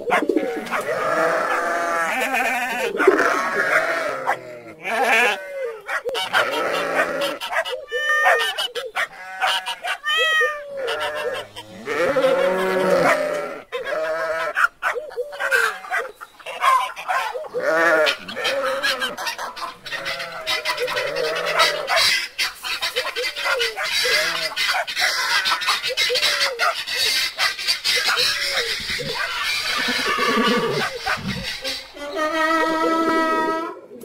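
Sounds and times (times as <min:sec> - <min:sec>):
animal cries rising and falling: 0:00.3 - 0:08.6, 0:09.2 - 0:14.5, 0:28.3 - 0:33.9.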